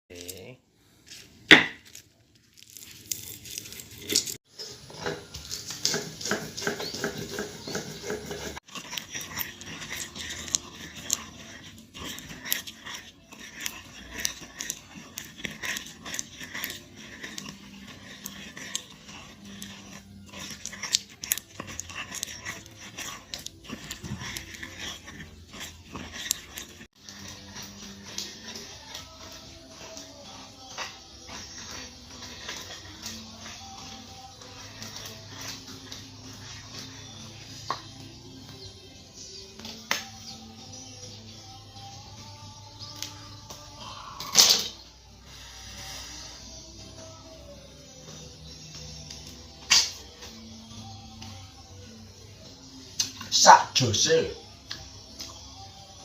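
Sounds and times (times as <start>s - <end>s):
chewing and crunching: 1.8s - 41.0s.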